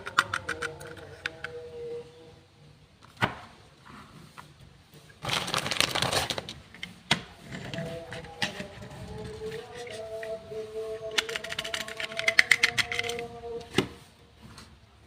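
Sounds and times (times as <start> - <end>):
plastic toy parts clicking: 0.0 - 1.6, 11.0 - 13.4
plastic toy parts rattling: 0.0 - 1.6, 11.0 - 13.4.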